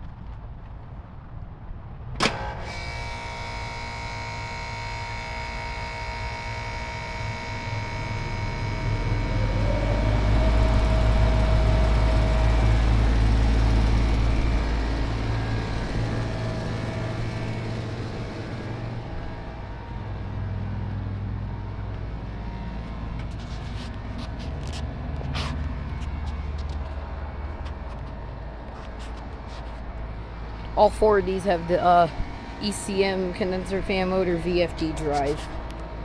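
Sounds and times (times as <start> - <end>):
air conditioner units humming: 2.2 - 36.0
tone gliding upward: 8.0 - 19.6.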